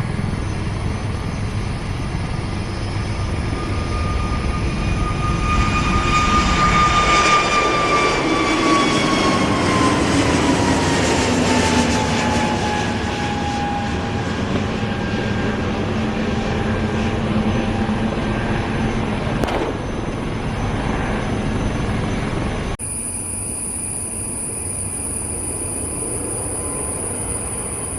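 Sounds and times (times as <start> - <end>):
airliner engine whine passing: 0.0 - 27.9
sharp click: 19.4 - 20.2.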